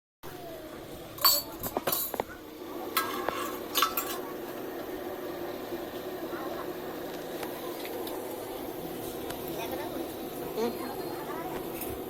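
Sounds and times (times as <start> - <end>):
dishes and cutlery clinking: 1.2 - 2.4, 3.0 - 4.2.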